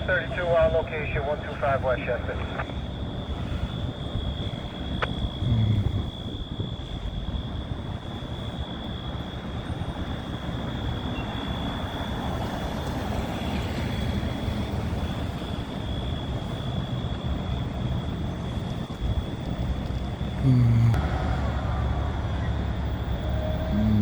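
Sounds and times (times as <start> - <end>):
diesel engine running: 20.6 - 24.0.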